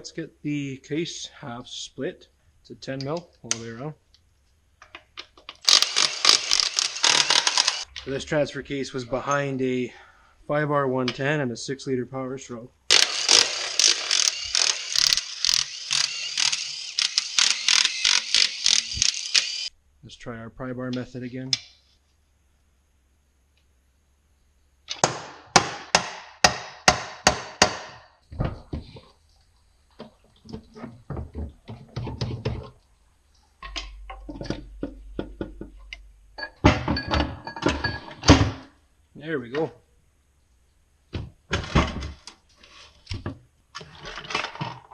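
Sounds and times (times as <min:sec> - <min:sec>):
power ratchet whirring: 0:05.6 - 0:07.9, 0:12.9 - 0:19.7.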